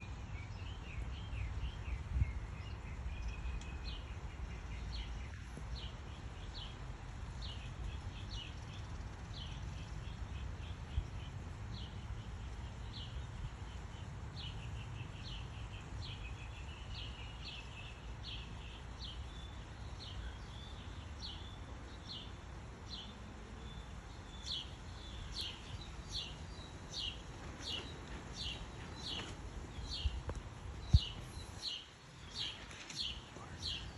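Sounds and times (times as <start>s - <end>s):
small bird chirping: 22.9s - 33.9s.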